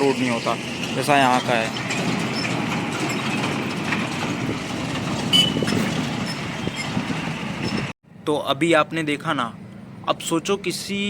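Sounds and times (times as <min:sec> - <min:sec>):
vehicle driving on dirt road: 0:00.0 - 0:07.9
high squeak: 0:05.3 - 0:07.0.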